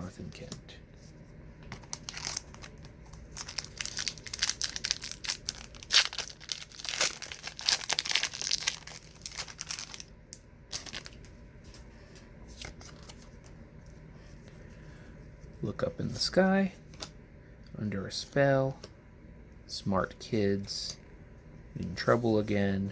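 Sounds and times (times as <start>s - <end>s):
wrapper tearing and crinkling: 1.8s - 10.1s, 10.7s - 11.2s.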